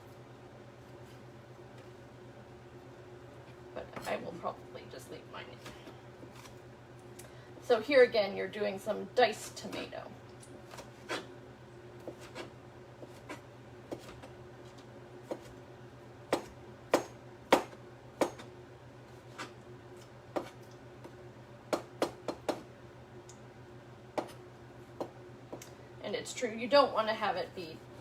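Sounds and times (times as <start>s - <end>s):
faint steady hum: 0.0s - 28.0s
knife chopping on cutting board: 12.0s - 14.3s, 15.2s - 15.5s, 16.3s - 18.5s, 20.3s - 20.6s, 24.2s - 24.4s.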